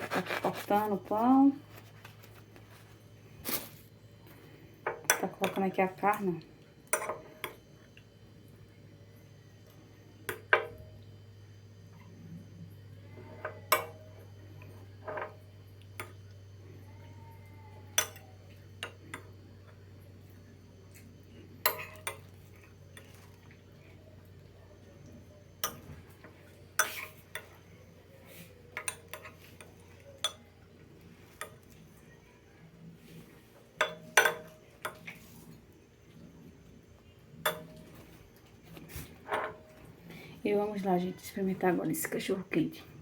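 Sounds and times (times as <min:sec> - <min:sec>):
low steady hum: 0:00.0 - 0:43.0
utensils clinking on pots and plates: 0:25.6 - 0:27.6, 0:28.7 - 0:30.5, 0:33.8 - 0:35.1, 0:37.4 - 0:38.0.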